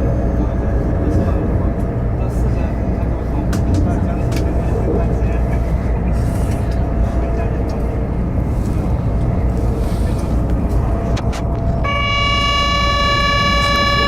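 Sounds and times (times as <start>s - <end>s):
steady rumbling noise: 0.0s - 14.0s
steady pitched horn-like tone: 11.8s - 14.0s.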